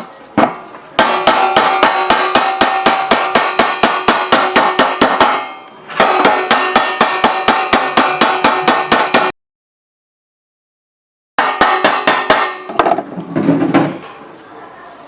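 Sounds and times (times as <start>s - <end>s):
iron plate struck rapidly: 1.0s - 9.3s, 11.4s - 12.7s.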